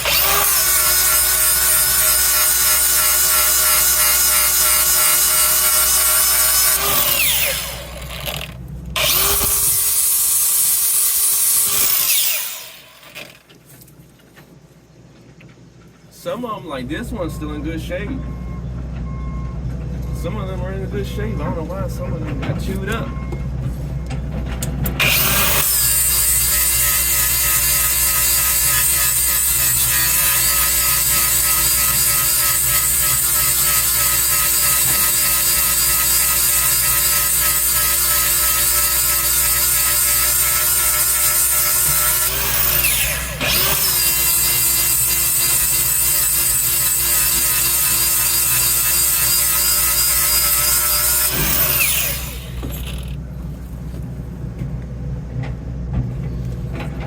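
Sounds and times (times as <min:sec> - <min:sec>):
power grinder grinding metal: 0:00.0 - 0:13.4, 0:25.0 - 0:53.2.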